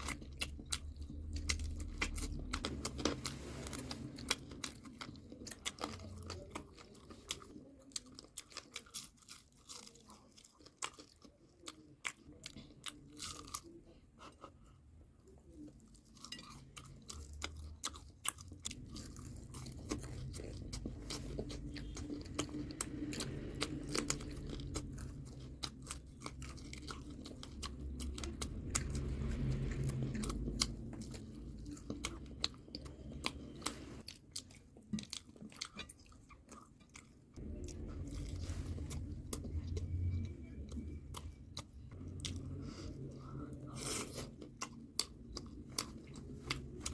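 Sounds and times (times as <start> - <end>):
person chewing and crunching food: 0.0 - 46.9.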